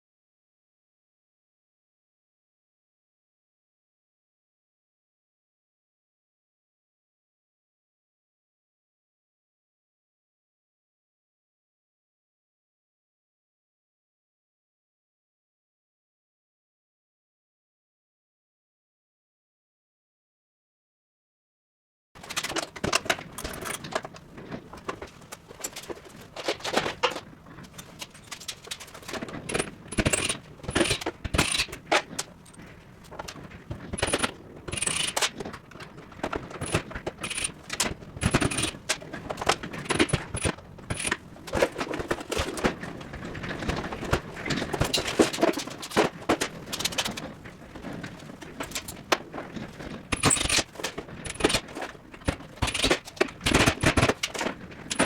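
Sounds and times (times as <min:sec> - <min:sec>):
metal tools clinking and scraping: 0:27.8 - 0:31.8.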